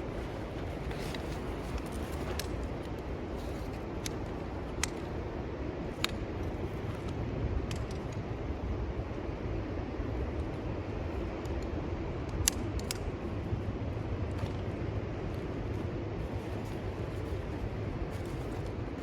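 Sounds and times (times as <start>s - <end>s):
steady low rumble: 0.0s - 19.0s
camp gear clicking and clinking: 0.1s - 8.2s.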